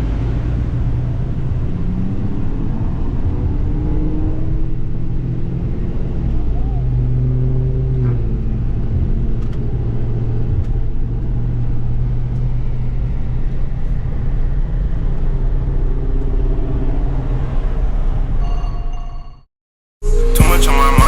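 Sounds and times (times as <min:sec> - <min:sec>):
car engine running steadily: 0:00.0 - 0:16.8.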